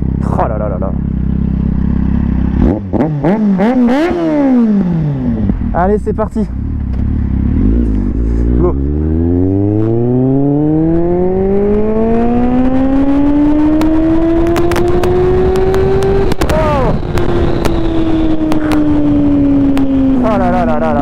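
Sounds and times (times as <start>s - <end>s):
motorcycle engine accelerating: 0.0s - 21.0s
microphone crackles: 14.6s - 19.0s.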